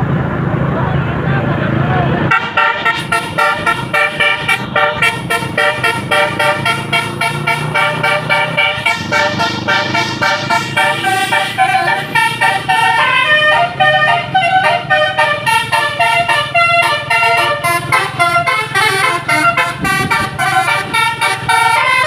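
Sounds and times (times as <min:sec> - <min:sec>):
multi-tone musical bus horn: 0:02.3 - 0:22.0.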